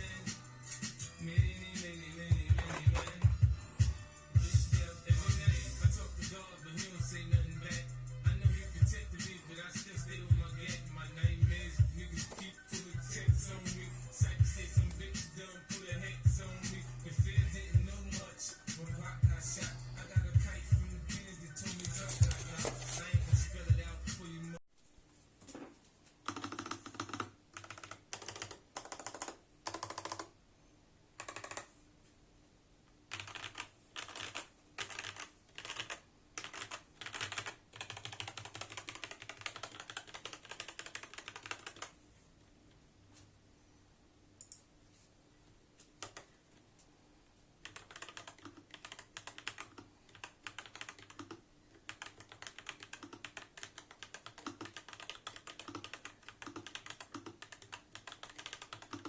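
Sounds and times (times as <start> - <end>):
mechanical keyboard typing: 2.4 - 3.4, 26.2 - 30.3, 31.2 - 31.7, 33.1 - 42.0, 46.0 - 46.3, 47.6 - 59.0.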